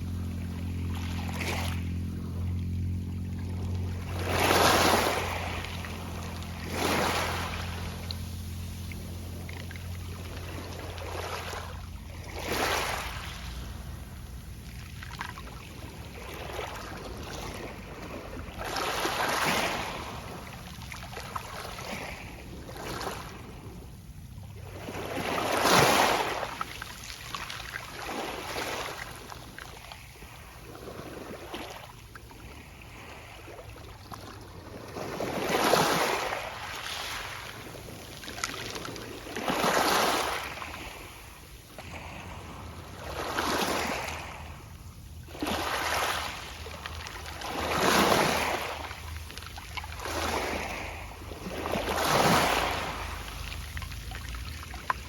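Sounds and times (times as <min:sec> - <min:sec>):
waves on a pebble beach: 0:00.0 - 0:55.0.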